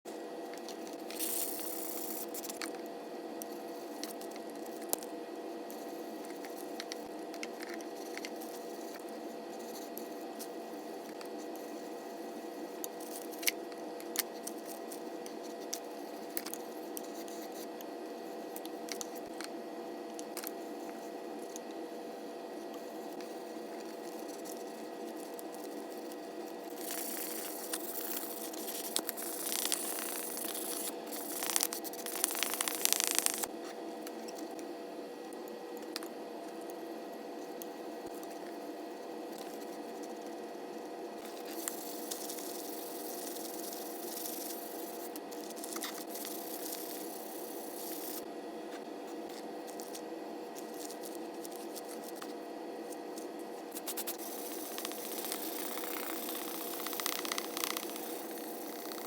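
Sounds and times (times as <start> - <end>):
steady hum: 0.1 - 59.0.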